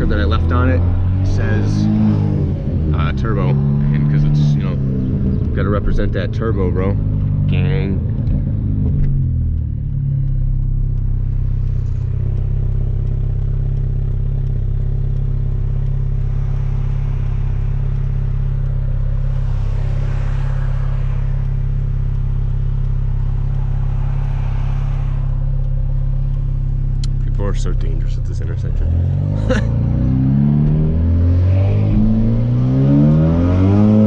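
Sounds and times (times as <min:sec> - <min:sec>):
car engine droning: 0:00.0 - 0:34.0
rushing noise: 0:16.3 - 0:27.0.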